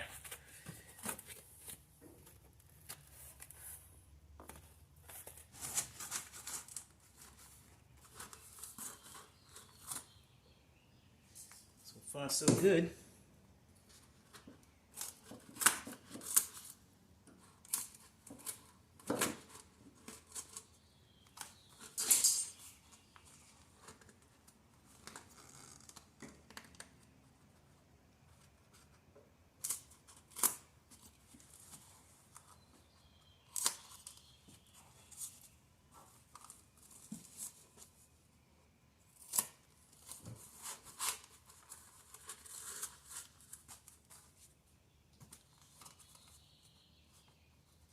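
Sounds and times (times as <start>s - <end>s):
rustling and scraping: 0.0s - 10.2s, 33.8s - 38.2s.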